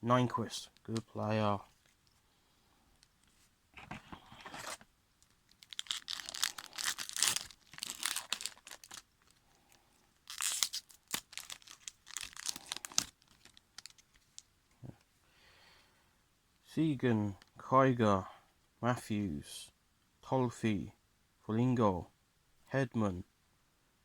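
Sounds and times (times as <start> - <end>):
wrapper tearing and crinkling: 5.5 - 9.4, 10.2 - 14.5.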